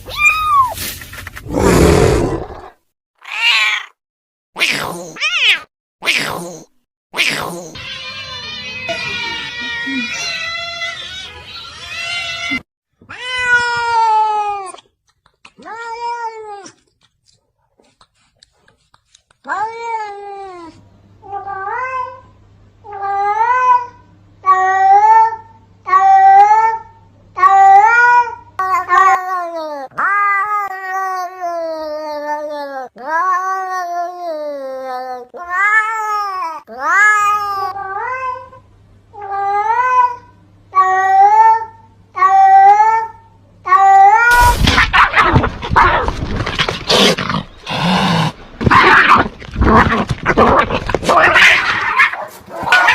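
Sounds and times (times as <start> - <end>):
cat meowing: 3.2 - 4.0.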